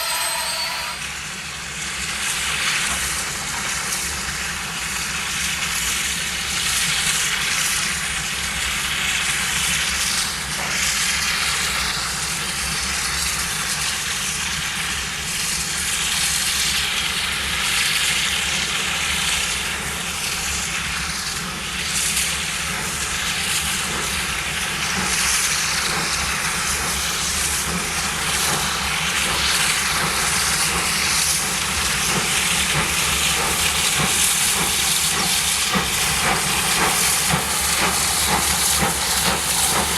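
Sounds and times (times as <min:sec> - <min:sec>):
steam locomotive hissing: 0:00.0 - 0:01.8, 0:18.1 - 0:39.9.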